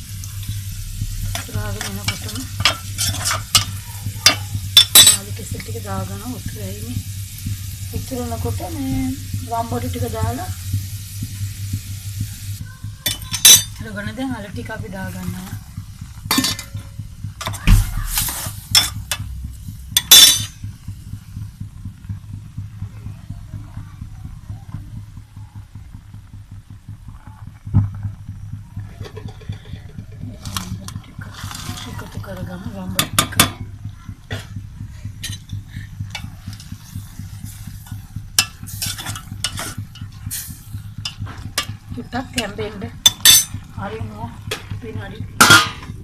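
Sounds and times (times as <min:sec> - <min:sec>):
curry simmering: 0:00.0 - 0:46.0
low steady hum: 0:00.0 - 0:46.0
spoon scraping and clinking pot: 0:01.3 - 0:05.2, 0:16.3 - 0:16.8, 0:20.0 - 0:20.5, 0:37.9 - 0:40.1, 0:43.1 - 0:43.6
metal utensils clinking on pot: 0:01.3 - 0:05.7, 0:13.0 - 0:13.8, 0:16.3 - 0:19.3, 0:20.0 - 0:20.6, 0:29.0 - 0:32.2, 0:33.0 - 0:33.6, 0:35.2 - 0:36.7, 0:37.9 - 0:40.2, 0:41.0 - 0:41.8, 0:42.4 - 0:43.7, 0:45.4 - 0:45.9.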